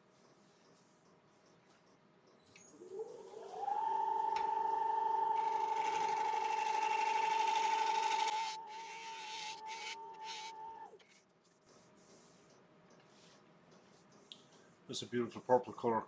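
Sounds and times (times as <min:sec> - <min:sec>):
wood lathe motor whine: 0:02.6 - 0:11.0
gouge scraping spinning wood: 0:05.4 - 0:10.8.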